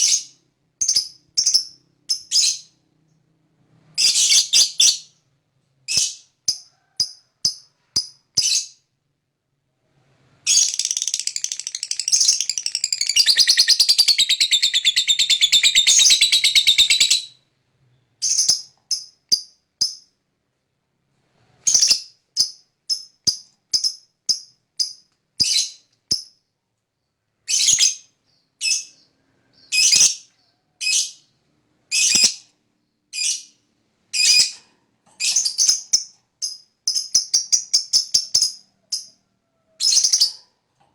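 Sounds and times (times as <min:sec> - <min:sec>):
lovebird chirps: 0:00.0 - 0:02.8, 0:10.4 - 0:17.4
lovebird rattling trill: 0:10.5 - 0:17.2.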